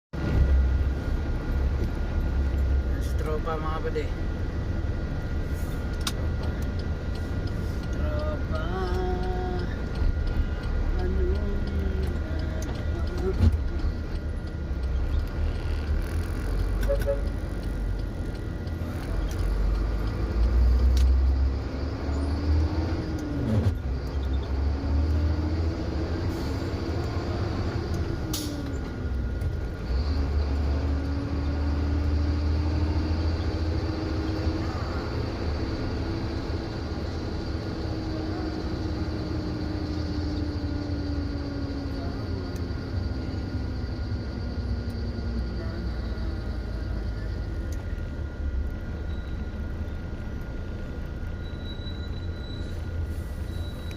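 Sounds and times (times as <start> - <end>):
vehicle engine revving: 19.1 - 28.5, 29.8 - 47.5.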